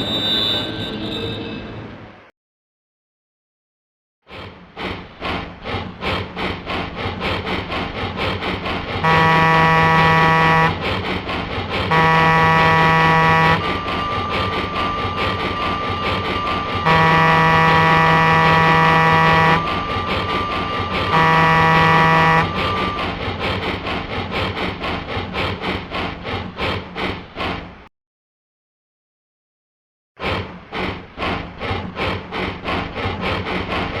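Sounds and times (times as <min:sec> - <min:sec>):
train horn blasts: 0:00.0 - 0:01.5, 0:09.0 - 0:10.9, 0:11.8 - 0:23.1
train running rhythmically: 0:04.3 - 0:27.9, 0:30.2 - 0:34.0.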